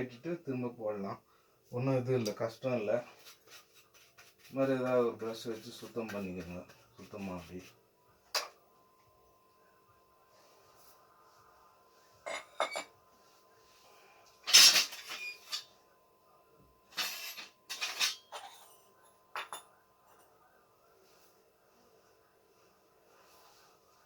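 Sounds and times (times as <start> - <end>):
metal stove parts clinking: 14.4 - 15.7, 16.9 - 18.8.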